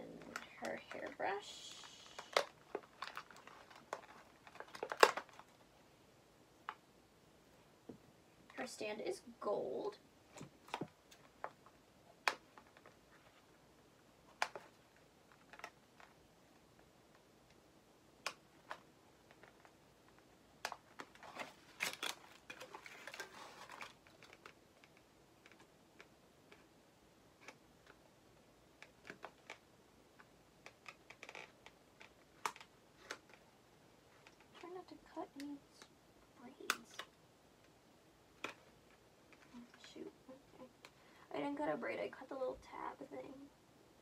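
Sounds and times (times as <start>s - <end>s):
plastic packaging clicks and crinkling: 1.8s - 5.7s, 14.3s - 17.6s, 18.2s - 26.7s, 28.7s - 33.5s, 38.4s - 40.0s.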